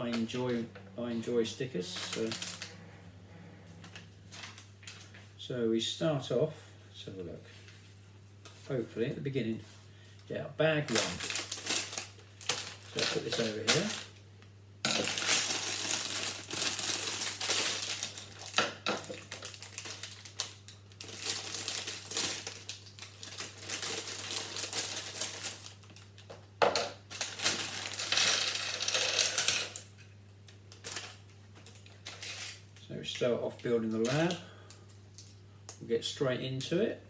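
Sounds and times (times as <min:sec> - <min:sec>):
plastic toy bricks clattering: 0:27.3 - 0:29.8.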